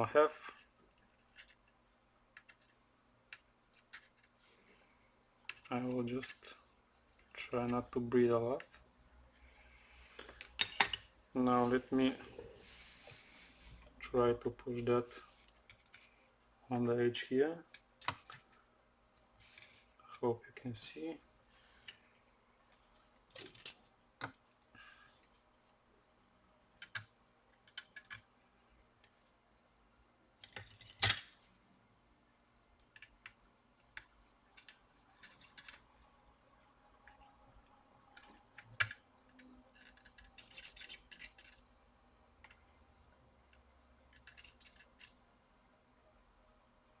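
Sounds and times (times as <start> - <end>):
small tools scraping circuit board: 38.2 - 41.7, 44.1 - 45.2.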